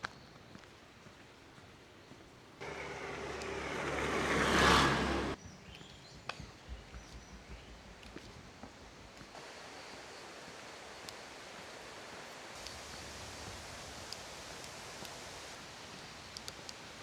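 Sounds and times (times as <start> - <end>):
outdoor rushing noise: 2.6 - 5.4
faint ticks: 9.9 - 13.1, 13.8 - 16.9.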